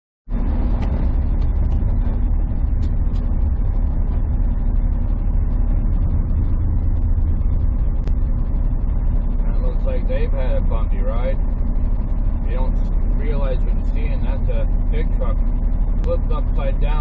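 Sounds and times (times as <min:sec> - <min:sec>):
road noise: 0:00.2 - 0:17.0
truck engine drone: 0:00.2 - 0:17.0.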